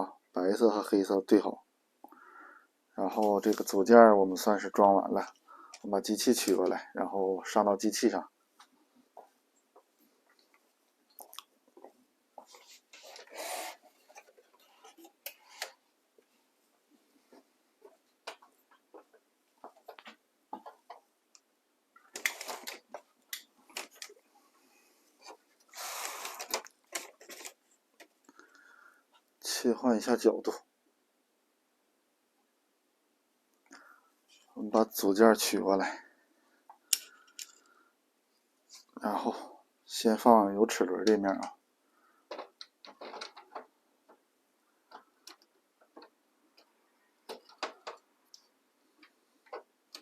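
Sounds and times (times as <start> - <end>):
printer parts clicking and clattering: 42.3 - 43.7, 47.3 - 48.1.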